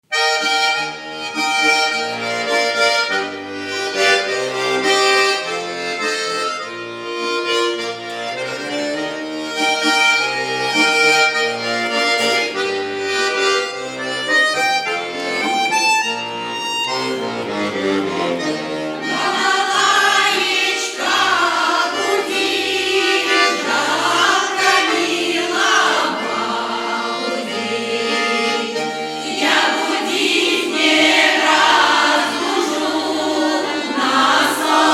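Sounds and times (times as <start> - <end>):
accordion folk dance tune: 0.0 - 34.9
choir singing: 17.5 - 34.9.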